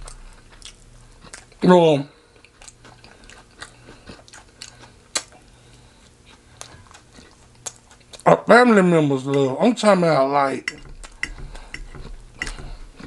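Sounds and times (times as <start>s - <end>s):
person chewing fried chicken: 0.0s - 1.6s, 2.2s - 8.3s, 10.9s - 13.0s.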